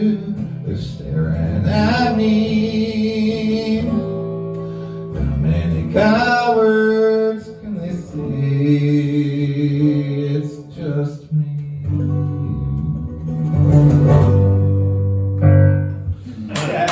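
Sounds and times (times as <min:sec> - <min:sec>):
acoustic guitar chords: 0:00.0 - 0:16.9.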